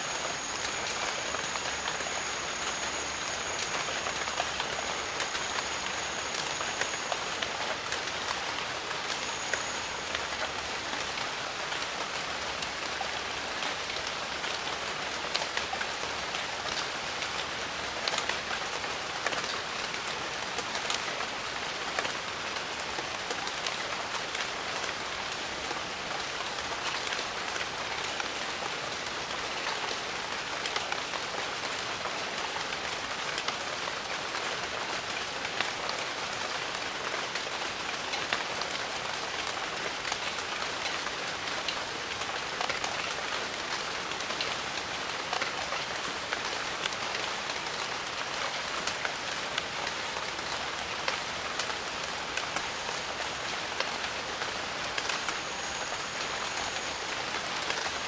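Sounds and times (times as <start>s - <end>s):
rain hissing: 0.0s - 16.0s, 39.0s - 58.0s
raindrops pattering on leaves: 0.0s - 58.0s.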